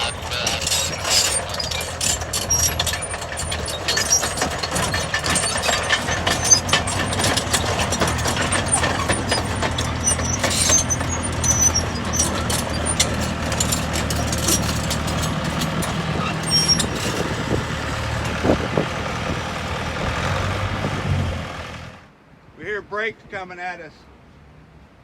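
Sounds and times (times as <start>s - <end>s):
high-pitched squeals: 0.0s - 18.5s
clicks and clanks: 0.0s - 18.6s
bulldozer engine running: 0.0s - 22.1s.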